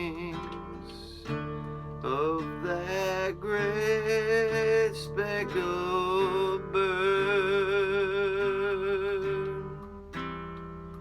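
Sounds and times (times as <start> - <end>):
acoustic guitar: 0.0 - 11.0
person singing long notes: 2.0 - 9.9.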